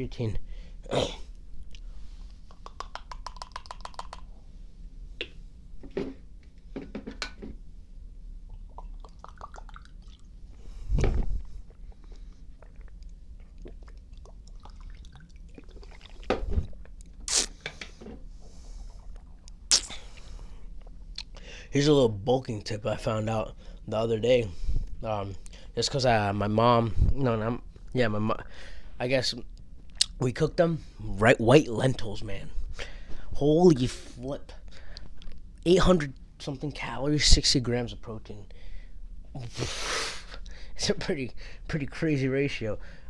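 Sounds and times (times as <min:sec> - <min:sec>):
mouth and liquid sounds: 0:00.9 - 0:04.4, 0:08.5 - 0:17.7, 0:18.9 - 0:21.4.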